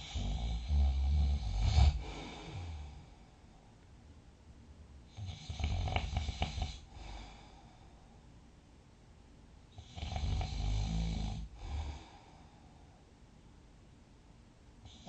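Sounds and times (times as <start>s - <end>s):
person snoring: 0.0s - 3.2s, 5.1s - 7.6s, 9.8s - 12.3s
quiet breath: 0.0s - 4.0s, 5.0s - 8.6s, 9.7s - 13.4s.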